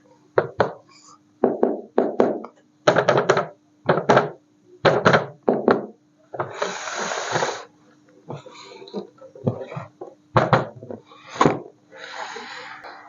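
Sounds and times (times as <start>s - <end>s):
faint steady hum: 0.0s - 13.0s
hiss: 6.4s - 7.7s.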